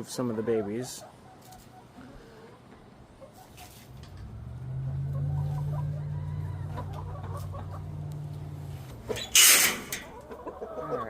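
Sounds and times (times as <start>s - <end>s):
hens clucking: 0.0s - 11.0s
steady low hum: 3.9s - 10.2s.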